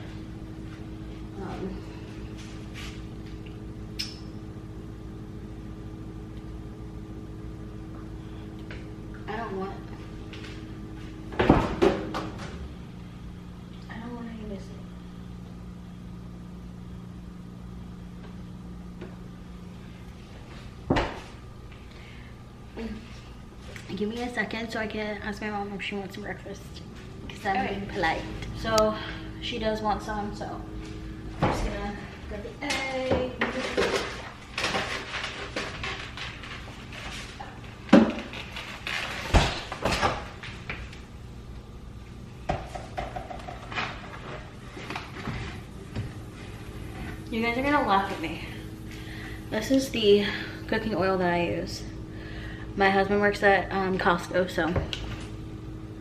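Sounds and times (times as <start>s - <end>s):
kitchen appliance humming: 0.0s - 56.0s
knocks and clunks in kitchen: 11.3s - 12.7s, 20.8s - 21.4s, 31.3s - 32.0s, 37.8s - 38.4s, 42.4s - 46.2s.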